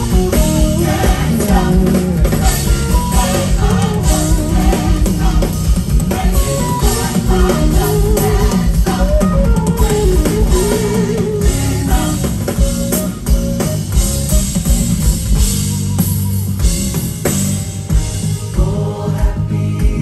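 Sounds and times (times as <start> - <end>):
guitar melody: 0.0 - 18.4
bass guitar: 0.0 - 20.0
drum kit: 0.0 - 20.0.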